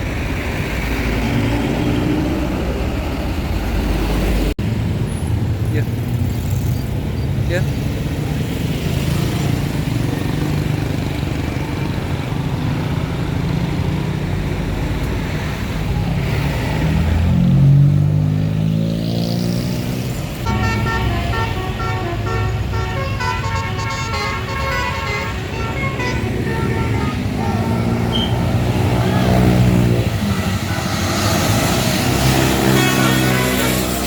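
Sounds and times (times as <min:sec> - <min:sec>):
traffic: 0:00.0 - 0:34.0
bus engine revving: 0:08.0 - 0:34.0
bus horn playing a tune: 0:20.5 - 0:29.4, 0:30.0 - 0:34.0.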